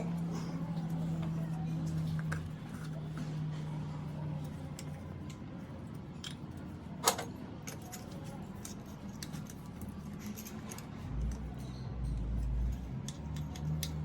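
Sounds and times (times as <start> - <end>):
metal tools clinking: 7.0 - 14.0.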